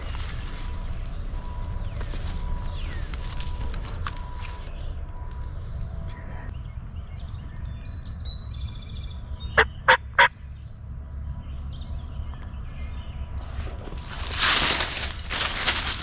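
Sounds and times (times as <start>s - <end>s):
turkey yelps: 9.6s - 10.3s.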